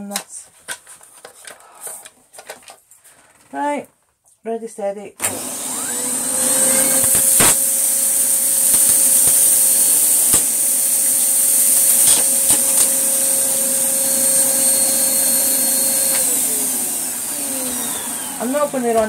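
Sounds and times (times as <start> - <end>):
vacuum cleaner running: 5.2 - 19.0.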